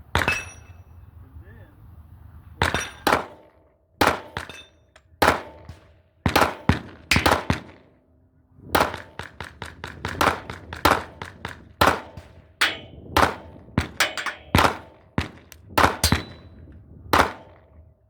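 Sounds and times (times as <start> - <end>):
pistol shots: 2.6 - 4.6, 5.2 - 8.0, 8.7 - 17.8.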